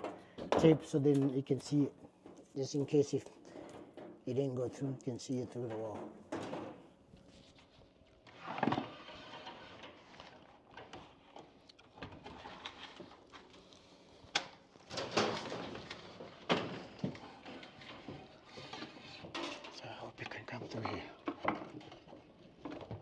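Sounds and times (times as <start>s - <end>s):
cable scraping through wall cavity: 7.3s - 19.6s.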